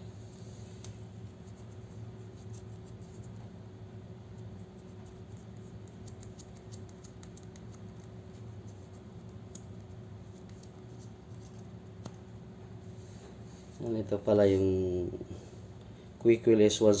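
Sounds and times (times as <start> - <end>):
steady low hum: 0.0 - 17.0
light clicks and scratching: 4.4 - 12.3.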